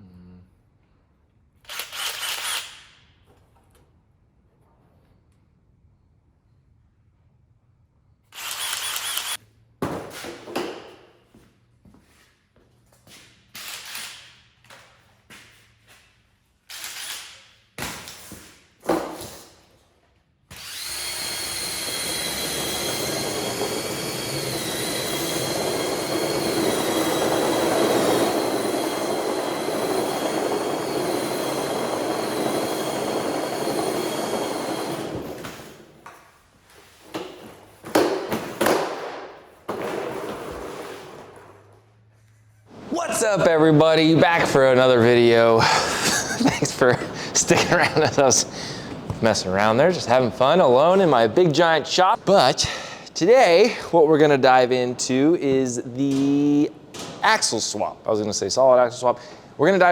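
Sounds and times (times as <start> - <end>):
power tool whining: 20.5 - 36.0, 44.0 - 51.3.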